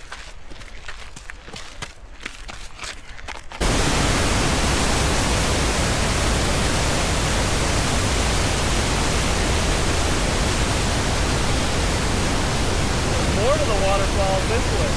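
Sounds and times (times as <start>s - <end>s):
footsteps on a trail: 0.0s - 3.6s
waterfall rushing: 3.6s - 14.9s.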